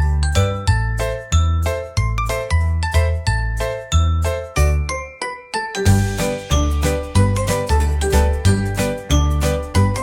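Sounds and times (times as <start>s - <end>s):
rhythmic chiming tune: 1.3s - 10.0s
bass beat: 5.9s - 10.0s.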